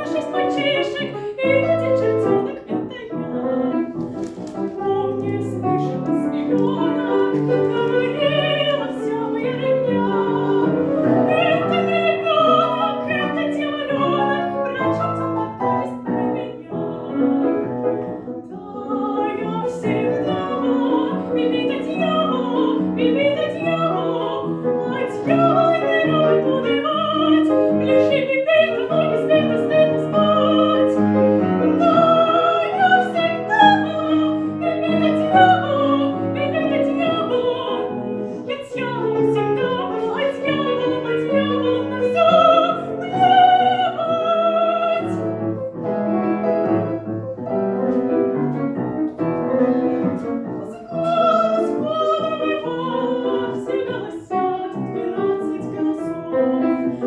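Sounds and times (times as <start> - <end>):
piano accompaniment: 0.0 - 57.0.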